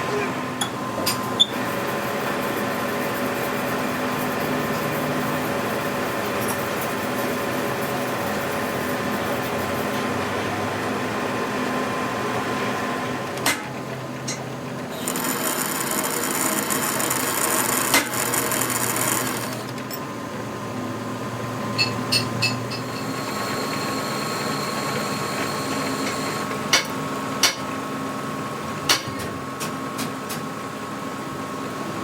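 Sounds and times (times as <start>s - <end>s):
machine whirring: 0.0s - 20.0s, 21.7s - 27.5s.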